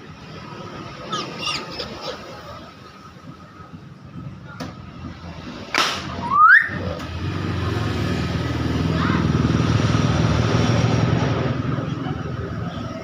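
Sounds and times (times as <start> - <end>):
bird harsh screech: 1.1 - 2.2
vehicle engine running: 6.9 - 13.0.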